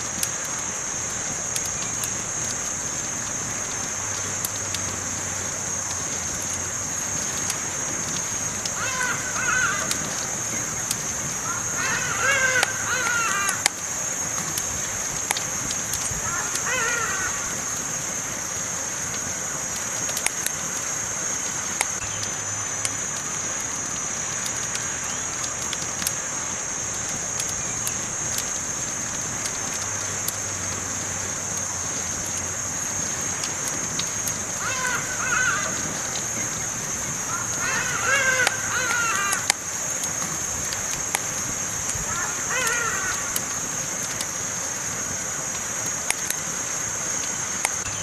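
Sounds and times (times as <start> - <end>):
campfire crackling and popping: 0.0 - 48.0
warbling call: 11.4 - 13.7, 16.2 - 17.7, 34.6 - 36.4, 37.2 - 39.5, 42.0 - 43.4.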